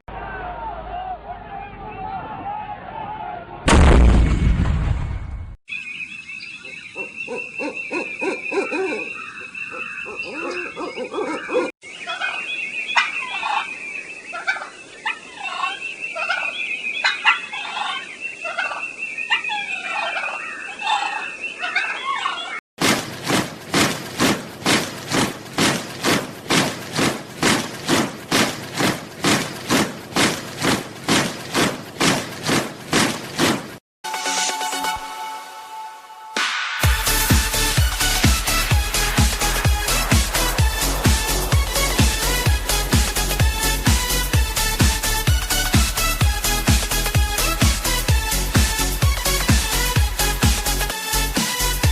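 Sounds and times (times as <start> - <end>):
turkey clucking and purring: 13.0 - 13.6, 14.4 - 22.6
soldiers marching in step: 22.8 - 33.8.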